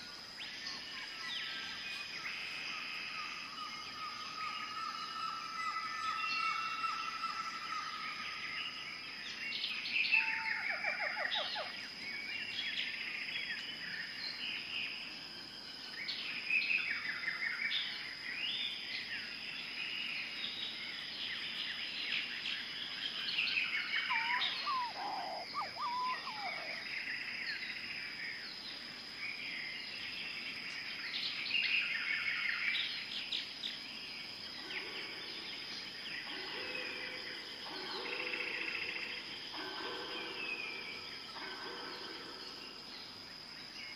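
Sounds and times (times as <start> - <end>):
birds calling and chirping: 0.0 - 15.1, 15.7 - 43.9
high insect drone: 0.0 - 43.9
rapid trilled bird calls: 23.4 - 27.6
low rising and falling call: 24.1 - 26.8.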